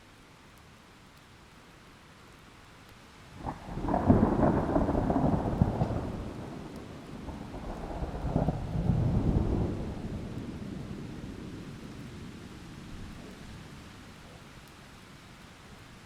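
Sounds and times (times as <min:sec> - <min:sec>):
steady rain: 0:00.0 - 0:16.0
thunder rumbling: 0:03.4 - 0:13.5.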